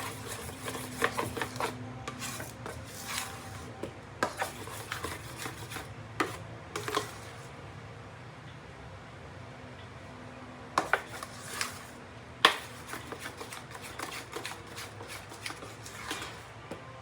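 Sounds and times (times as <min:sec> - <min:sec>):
low room hum: 0:00.0 - 0:17.0.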